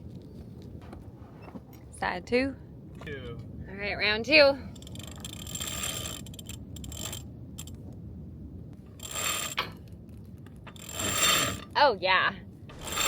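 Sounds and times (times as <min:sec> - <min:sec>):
line running: 0:12.6 - 0:13.0.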